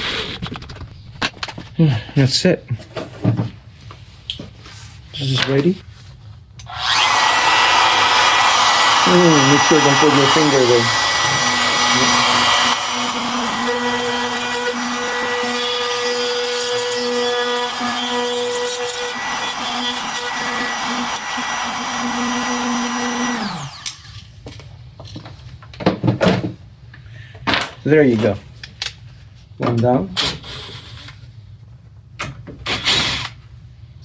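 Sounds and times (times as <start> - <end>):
router cutting wood: 6.6 - 24.1.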